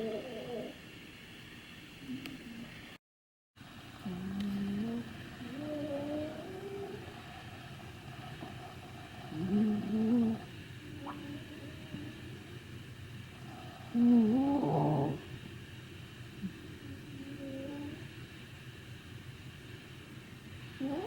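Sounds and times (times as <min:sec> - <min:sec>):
dogs snoring: 0:00.0 - 0:00.8, 0:04.0 - 0:12.4, 0:13.4 - 0:15.3, 0:20.8 - 0:21.0.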